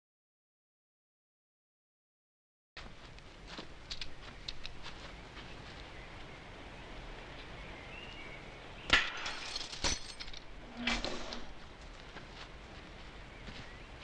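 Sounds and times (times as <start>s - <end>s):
sharp cracks: 8.9s - 10.0s.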